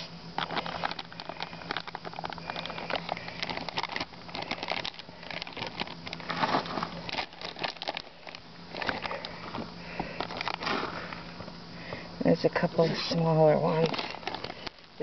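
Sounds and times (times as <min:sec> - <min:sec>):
hands rustling through food container: 0:00.0 - 0:11.6, 0:12.8 - 0:15.0
faint low hum: 0:00.0 - 0:15.0.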